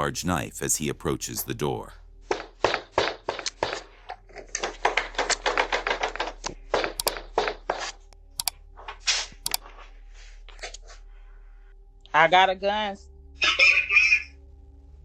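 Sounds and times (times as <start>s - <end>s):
low electrical hum: 8.0s - 15.0s.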